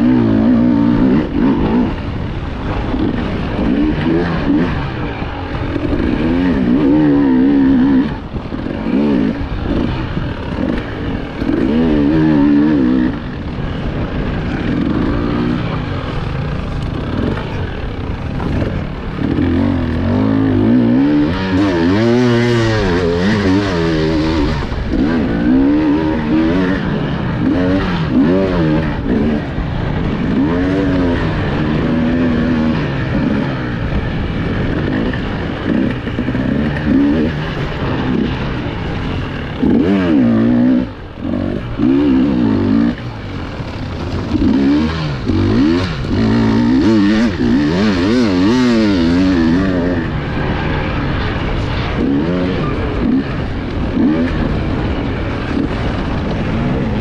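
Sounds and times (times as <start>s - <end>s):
mechanical and ground noise: 0.0s - 57.0s
motorcycle engine revving: 0.0s - 57.0s.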